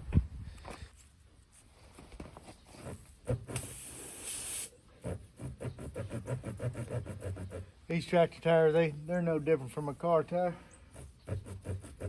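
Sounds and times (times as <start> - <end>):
reamer rasping in tire: 2.8 - 12.0
air hissing out of tire: 3.3 - 4.8.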